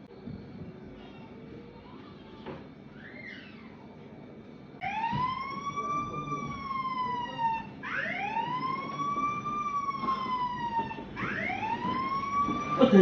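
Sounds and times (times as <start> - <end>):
phone alarm wailing siren: 4.8 - 13.0.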